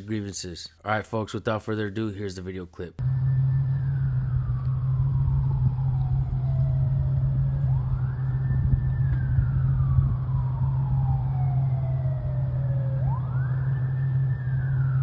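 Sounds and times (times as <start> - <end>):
siren wailing: 3.0 - 15.0
wind buffeting microphone: 4.4 - 15.0.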